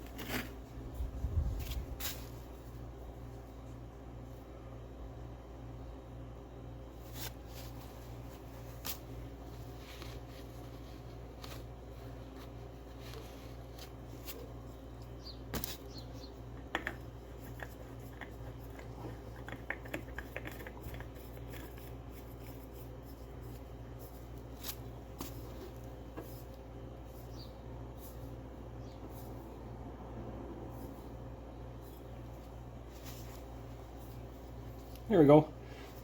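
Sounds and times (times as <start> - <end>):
steady low hum: 0.0 - 36.0
hands clicking and rustling: 9.8 - 23.6.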